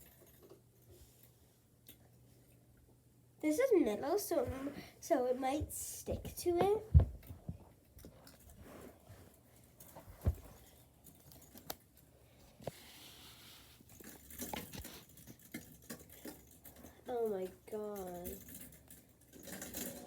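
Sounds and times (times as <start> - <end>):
soft hiss: 12.2 - 14.0.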